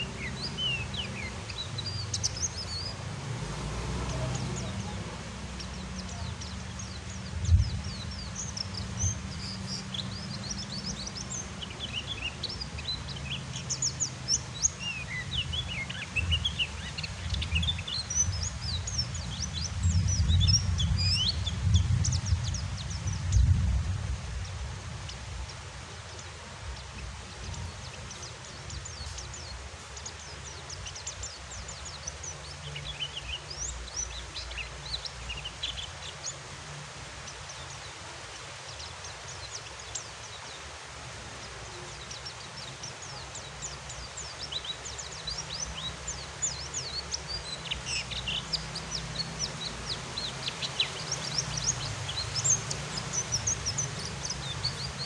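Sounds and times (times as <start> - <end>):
rain hiss: 0.0 - 55.0.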